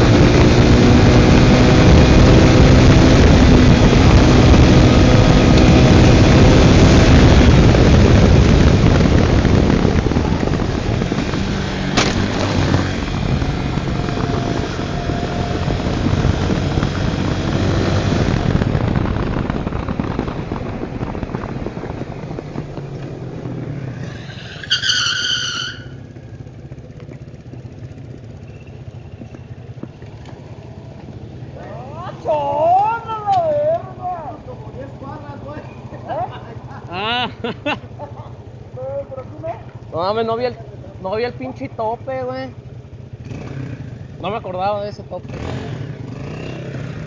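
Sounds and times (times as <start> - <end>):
wind noise: 0.0 - 25.0
motorcycle engine running: 0.0 - 47.0.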